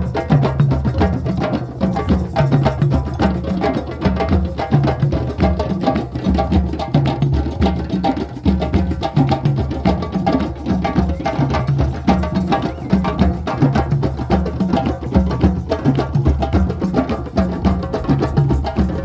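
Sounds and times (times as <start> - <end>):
deep low drum strokes: 17.6 - 19.0.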